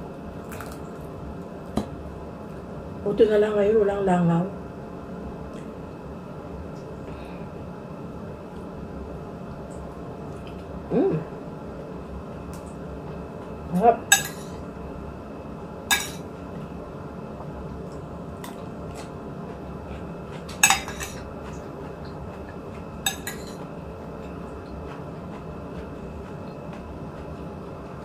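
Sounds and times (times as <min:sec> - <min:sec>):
low background hum: 0:00.0 - 0:28.0
plates and cutlery clinking: 0:14.1 - 0:14.6, 0:15.9 - 0:16.2, 0:20.5 - 0:21.2, 0:23.1 - 0:23.7.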